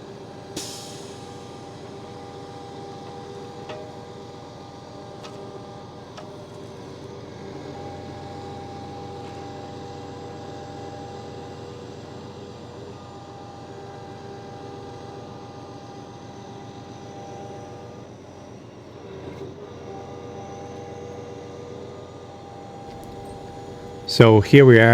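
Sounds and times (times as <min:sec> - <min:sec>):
steady whine: 0:22.9 - 0:24.9
truck diesel engine running: 0:22.9 - 0:24.9.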